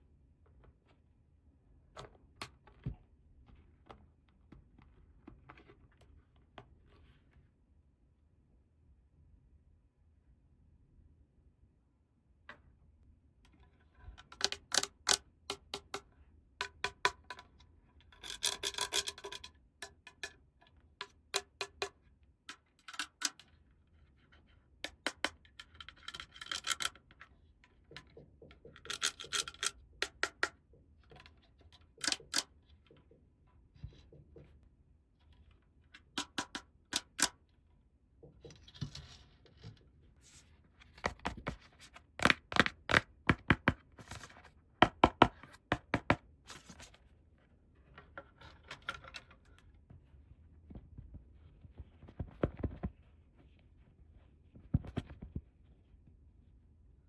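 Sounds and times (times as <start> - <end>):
plastic toy pieces clicking: 28.8 - 30.5.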